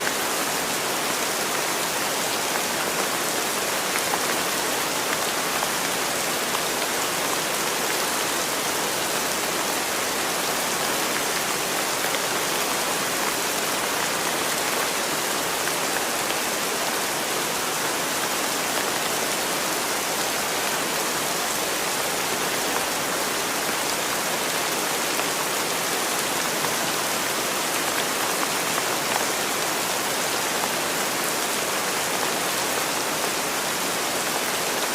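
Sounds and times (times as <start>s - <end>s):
steady rain hiss: 0.0s - 34.9s.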